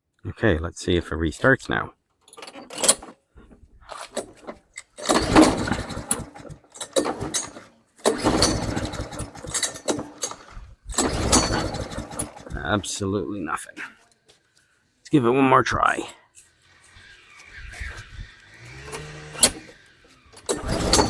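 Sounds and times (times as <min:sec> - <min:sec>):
mower engine cranking on recoil pulls: 0:02.3 - 0:13.2, 0:16.4 - 0:21.0.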